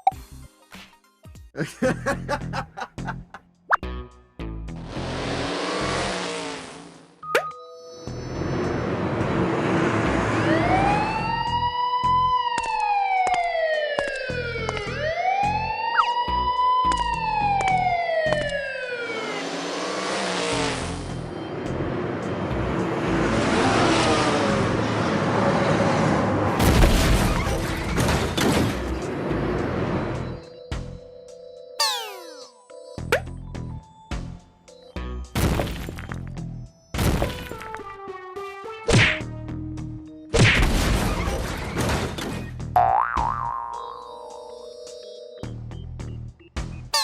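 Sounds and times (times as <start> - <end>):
noisy engine-like sound: 4.7 - 7.2, 8.0 - 12.3, 16.9 - 31.0
siren wailing: 10.1 - 21.6, 31.8 - 32.6.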